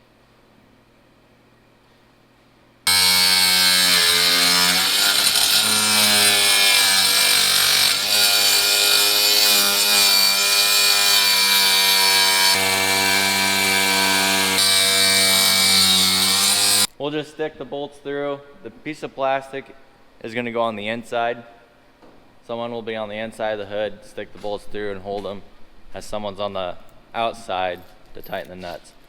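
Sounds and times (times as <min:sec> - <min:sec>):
power saw cutting plastic: 0:02.9 - 0:16.9.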